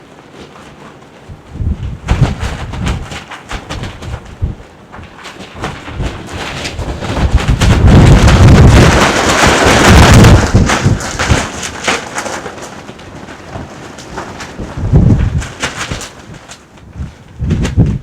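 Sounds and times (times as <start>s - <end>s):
crackles: 0.0s - 18.0s
wind gust buffeting microphone: 1.3s - 4.7s, 5.6s - 11.7s, 14.6s - 18.0s.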